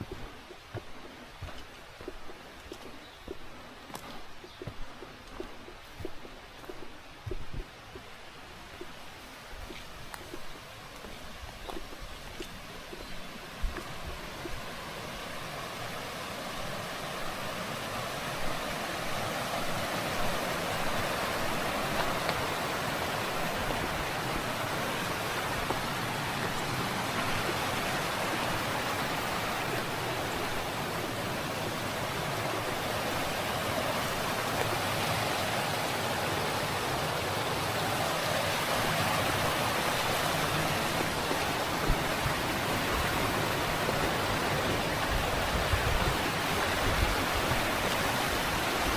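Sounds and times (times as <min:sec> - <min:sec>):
mountain stream rushing: 0:00.0 - 0:48.9.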